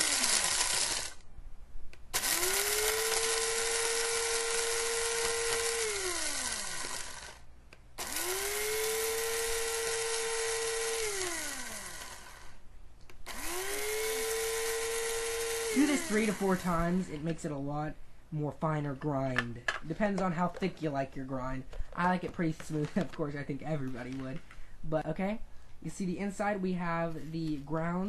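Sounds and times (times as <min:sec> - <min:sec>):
coffee grinder grinding beans: 0:00.0 - 0:01.2, 0:02.2 - 0:07.4, 0:08.0 - 0:12.6, 0:13.3 - 0:17.2.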